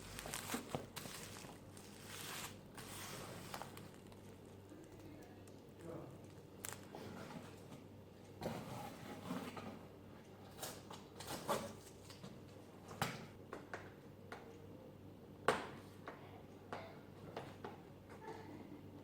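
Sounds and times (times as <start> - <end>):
rustling: 0.0 - 5.1.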